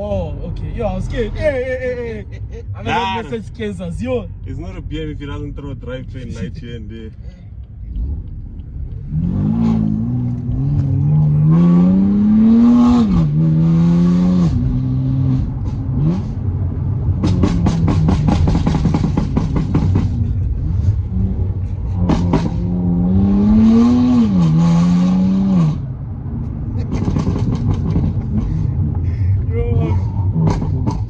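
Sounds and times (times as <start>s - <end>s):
exhaust pops and crackles: 7.0s - 11.2s, 17.1s - 20.5s, 21.9s - 22.6s, 26.4s - 29.2s, 30.0s - 31.0s
car engine accelerating hard: 7.9s - 31.0s.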